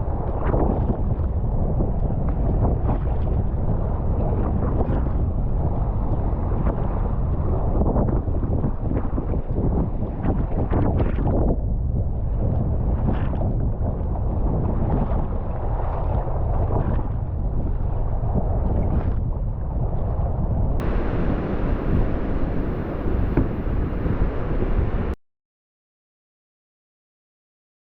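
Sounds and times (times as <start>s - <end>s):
wind buffeting microphone: 0.0s - 25.2s
ocean surf: 20.8s - 25.2s.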